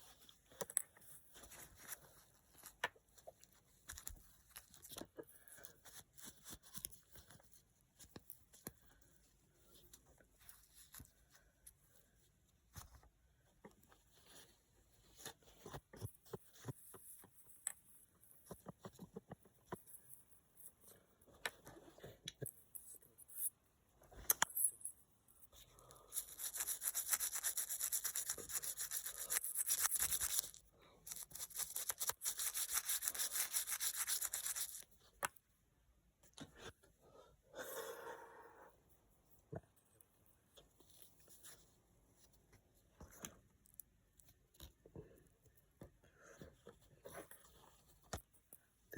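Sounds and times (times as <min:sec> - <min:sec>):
rapid scrubbing on coin: 0:26.1 - 0:34.8.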